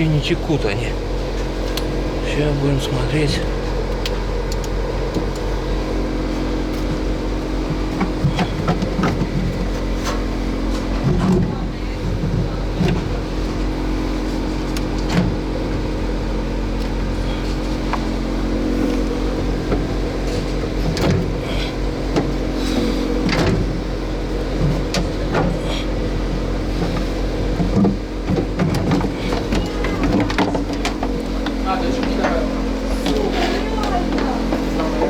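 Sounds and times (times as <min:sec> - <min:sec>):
machine hum: 0:00.0 - 0:35.0
knocks and clatter: 0:26.8 - 0:35.0.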